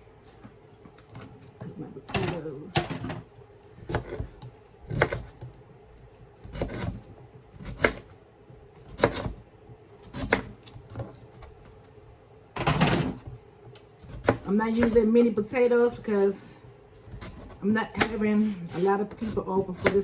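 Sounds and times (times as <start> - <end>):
knife cutting sweet potato: 3.9 - 5.5, 6.4 - 8.1, 8.8 - 9.4, 10.0 - 11.6, 14.0 - 16.2, 17.0 - 20.0.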